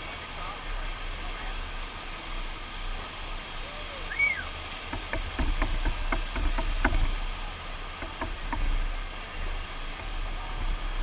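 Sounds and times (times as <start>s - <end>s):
water rushing from wave machine: 0.0s - 11.0s
short sharp knocks and clicks: 4.9s - 7.2s, 8.0s - 8.8s.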